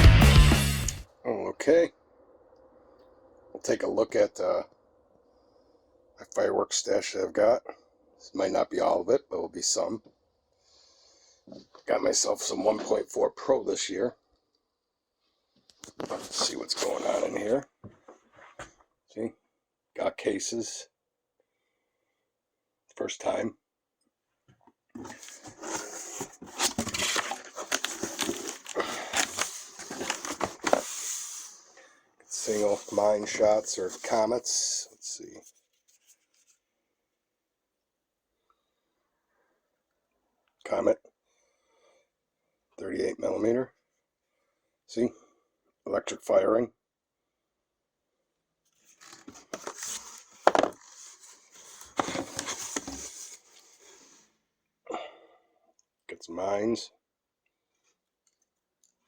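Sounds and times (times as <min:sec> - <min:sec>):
cardboard rustling and scraping: 0:16.0 - 0:17.5, 0:25.0 - 0:31.8, 0:32.4 - 0:34.3, 0:48.8 - 0:54.2.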